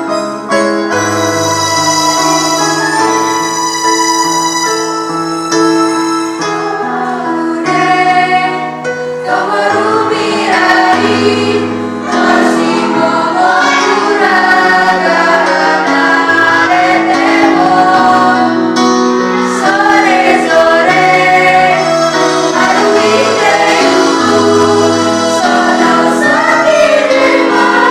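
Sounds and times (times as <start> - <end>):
instrumental accompaniment: 0.0 - 27.9
vocal group singing in unison: 6.6 - 27.9.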